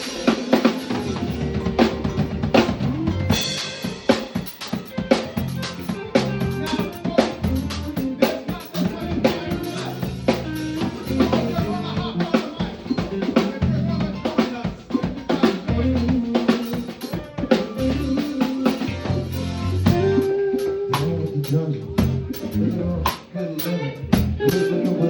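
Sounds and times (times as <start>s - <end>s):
drum kit playing: 0.0s - 25.0s
low bass notes: 1.0s - 3.7s, 5.3s - 8.1s, 8.8s - 12.2s, 13.6s - 14.2s, 15.7s - 16.2s, 18.9s - 23.2s, 24.0s - 24.7s.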